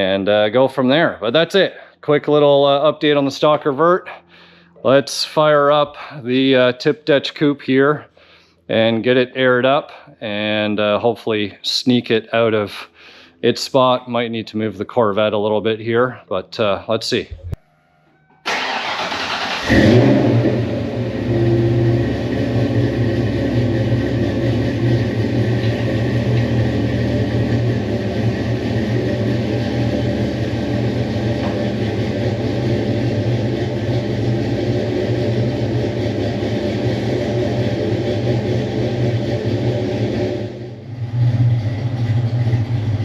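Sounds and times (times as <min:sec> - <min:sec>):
car engine starting and idling: 0:18.2 - 0:43.0.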